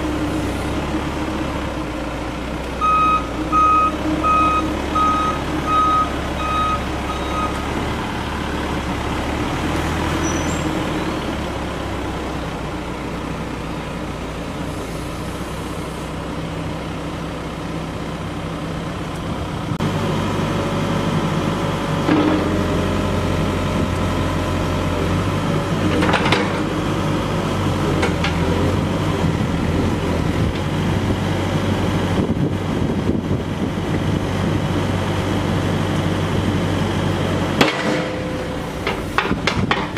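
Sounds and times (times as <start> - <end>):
diesel engine running: 0.0 - 39.9
reversing alarm beeping: 2.8 - 7.6.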